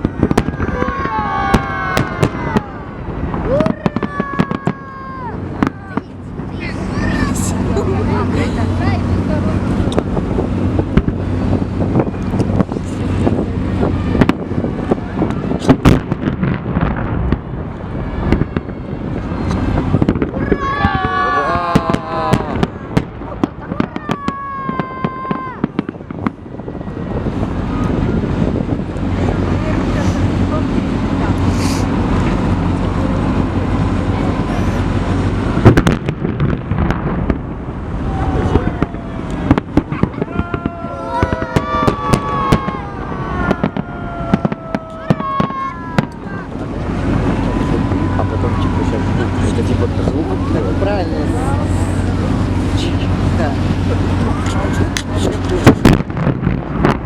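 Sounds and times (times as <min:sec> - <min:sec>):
firework bang: 0:00.0 - 0:06.2, 0:09.8 - 0:28.9, 0:35.2 - 0:50.5, 0:53.8 - 0:57.0
boat engine humming: 0:00.0 - 0:23.6, 0:24.4 - 0:57.0
low rumble: 0:00.0 - 0:57.0
wind on microphone: 0:00.0 - 0:57.0
people talking: 0:03.5 - 0:10.1, 0:20.4 - 0:22.6, 0:29.2 - 0:31.9, 0:32.9 - 0:35.6, 0:38.1 - 0:56.0
firework cracks and pops: 0:14.2 - 0:17.6, 0:18.2 - 0:26.4, 0:35.6 - 0:37.5, 0:38.5 - 0:46.4, 0:54.4 - 0:57.0
firework whistling: 0:17.8 - 0:23.0, 0:31.3 - 0:33.9, 0:34.5 - 0:50.6.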